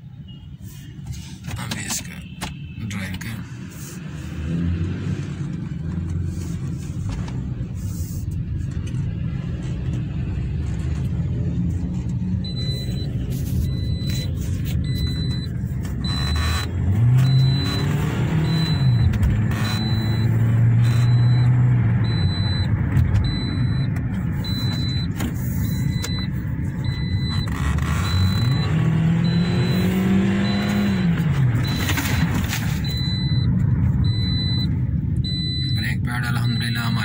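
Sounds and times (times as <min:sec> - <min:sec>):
car engine drone: 0:00.0 - 0:37.0
road rumble: 0:00.0 - 0:37.0
high electronic beep: 0:12.4 - 0:37.0.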